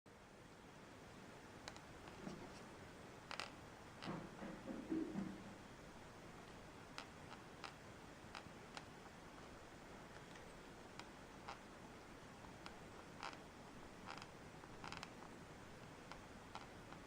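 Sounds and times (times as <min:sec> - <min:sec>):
faint creaking clicks: 0:01.6 - 0:05.3, 0:06.4 - 0:11.7, 0:12.4 - 0:17.0.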